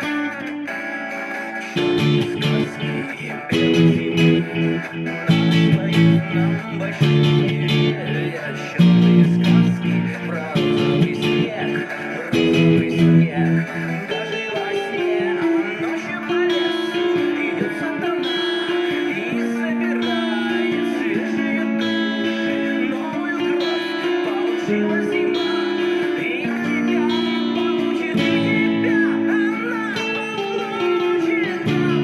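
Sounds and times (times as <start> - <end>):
guitar melody line: 0.0 - 32.0
strummed guitar chords: 0.0 - 32.0.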